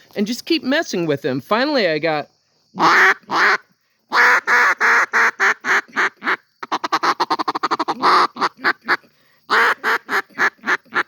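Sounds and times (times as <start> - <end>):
duck call quacks: 2.8 - 11.0.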